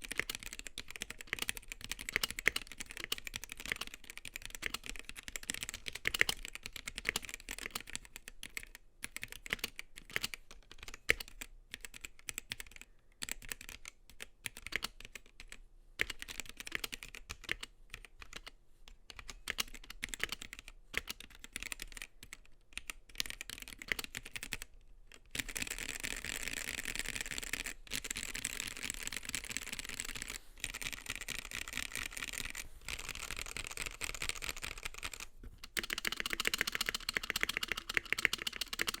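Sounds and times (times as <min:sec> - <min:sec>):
mechanical keyboard typing: 0:00.0 - 0:39.0.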